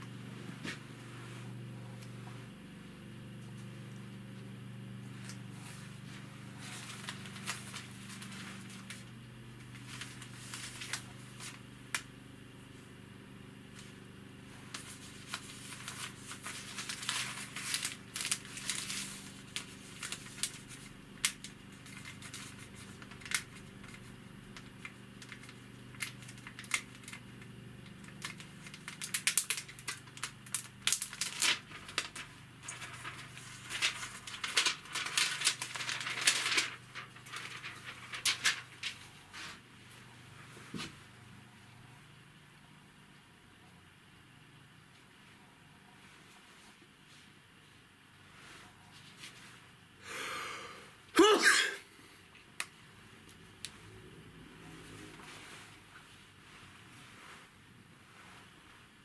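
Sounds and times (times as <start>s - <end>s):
steady low hum: 0.0s - 59.0s
packaging crinkling and rustling: 5.2s - 12.1s, 14.6s - 39.6s.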